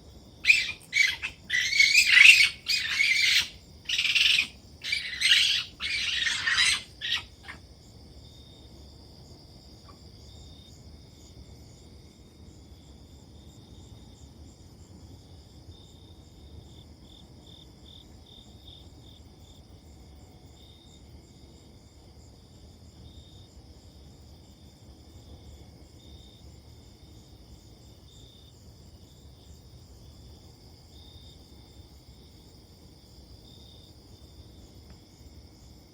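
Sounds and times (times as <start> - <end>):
insects chirping: 0.0 - 14.2, 25.2 - 35.9
harsh animal calls: 0.4 - 7.6.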